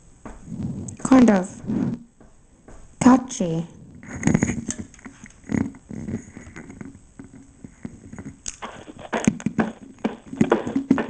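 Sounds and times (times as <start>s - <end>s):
irregular clicking and knocking: 2.0s - 3.0s, 4.0s - 11.0s.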